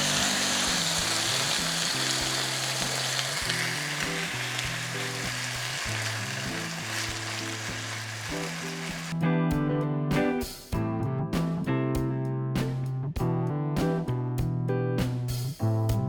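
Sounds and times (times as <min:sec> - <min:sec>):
leeks sizzling in oil: 0:00.0 - 0:09.2.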